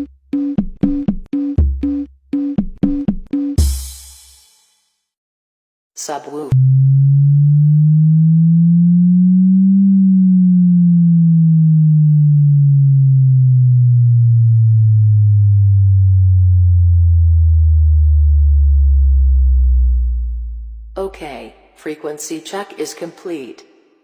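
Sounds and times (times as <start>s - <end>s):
low sine tone sweeping down: 6.5s - 21.0s.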